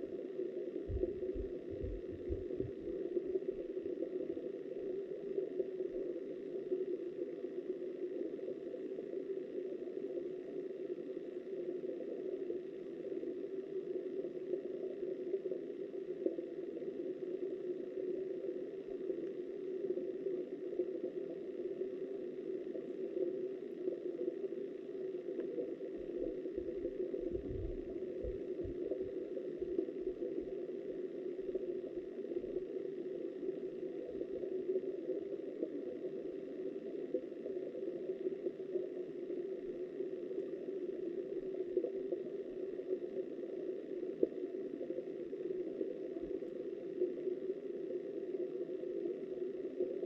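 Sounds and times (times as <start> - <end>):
low thumps: 0.9 - 2.8.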